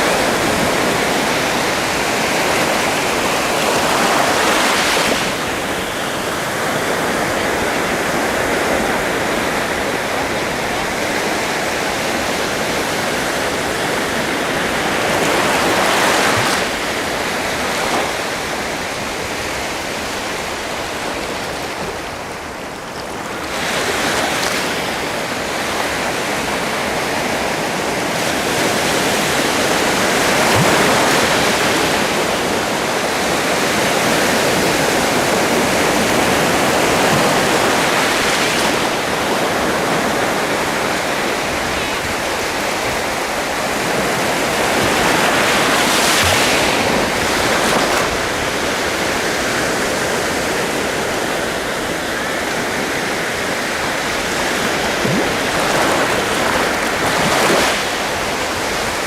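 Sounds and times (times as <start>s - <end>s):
sea waves washing on shore: 0.0s - 59.0s.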